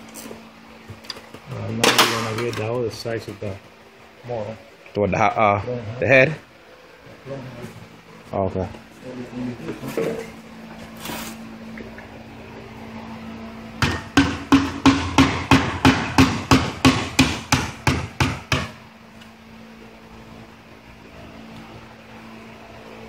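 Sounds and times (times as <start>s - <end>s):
hammer striking metal: 13.8s - 18.8s.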